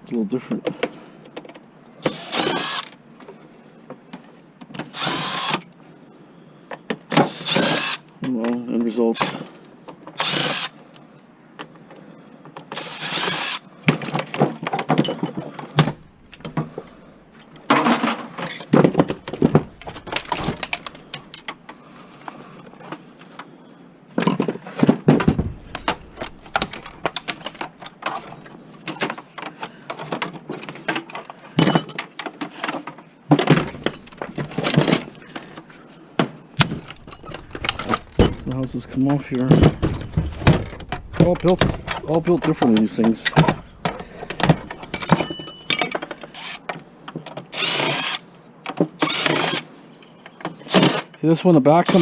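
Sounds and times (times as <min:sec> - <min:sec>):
metal parts knocking and clanking: 0:14.4 - 0:21.6, 0:24.2 - 0:29.2, 0:30.0 - 0:35.8, 0:36.6 - 0:46.4.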